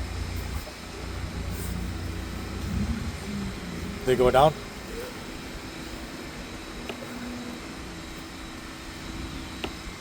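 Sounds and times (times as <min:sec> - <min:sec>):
pressure washer humming: 0:00.0 - 0:10.0.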